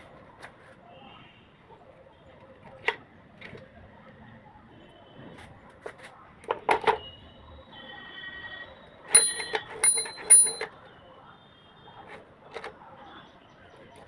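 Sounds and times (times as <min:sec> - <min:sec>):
typewriter carriage bell ringing: 0:09.1 - 0:10.8
metallic clatter: 0:09.2 - 0:10.7.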